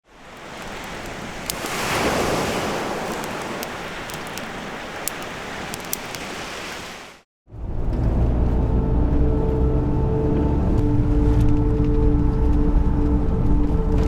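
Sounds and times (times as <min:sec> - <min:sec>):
sea waves washing onto shore: 0:00.0 - 0:07.2
faint sharp clicks: 0:00.4 - 0:01.8.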